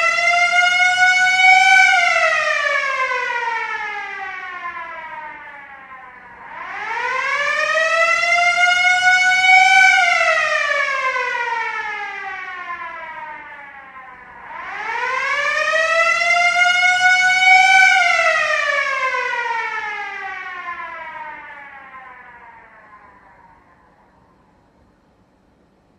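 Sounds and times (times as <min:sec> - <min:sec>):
air-raid siren wailing: 0:00.0 - 0:25.2.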